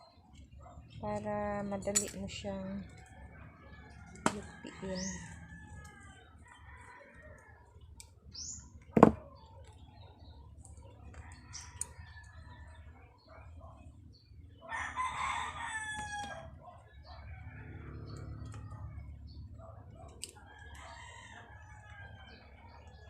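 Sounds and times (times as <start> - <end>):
rooster crowing: 3.0 - 7.6, 14.7 - 16.5.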